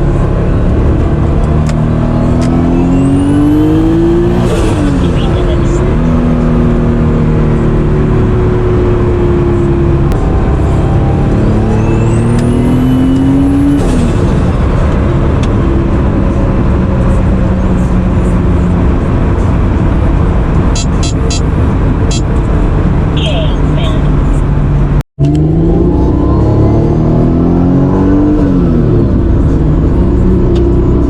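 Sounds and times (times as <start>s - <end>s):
car engine running: 0.0s - 31.0s
turbo whistle: 20.8s - 21.4s.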